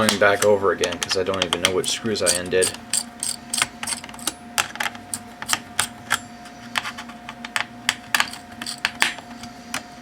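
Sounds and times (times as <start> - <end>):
faint hum: 0.0 - 10.0
screwdriver clicking on screws: 0.8 - 4.3.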